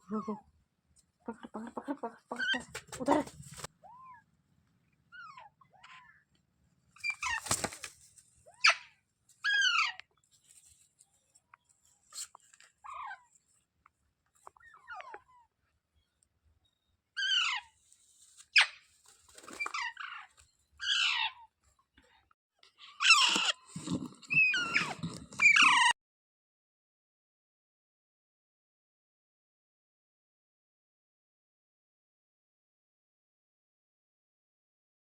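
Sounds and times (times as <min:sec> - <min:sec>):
parrot squawking and chirping: 0:07.0 - 0:07.6, 0:08.5 - 0:10.0, 0:17.2 - 0:17.8, 0:19.5 - 0:21.4, 0:22.8 - 0:25.9.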